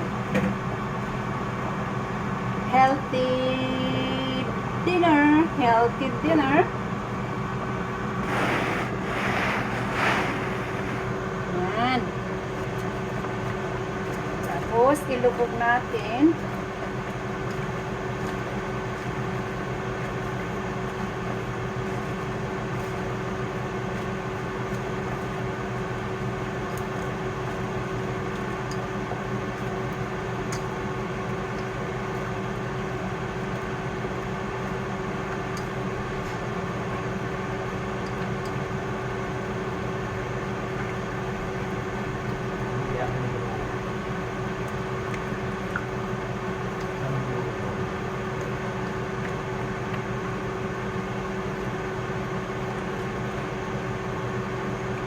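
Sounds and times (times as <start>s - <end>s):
steady machine hum: 0.0s - 12.6s.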